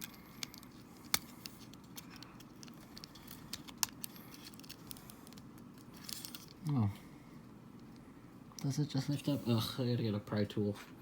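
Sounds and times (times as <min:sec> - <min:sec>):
plastic parts clicking and tapping: 0:00.0 - 0:06.6.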